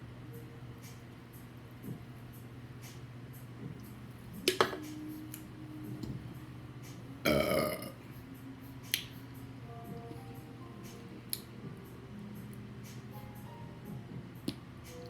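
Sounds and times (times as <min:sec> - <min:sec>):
woman burping: 0:07.3 - 0:08.0.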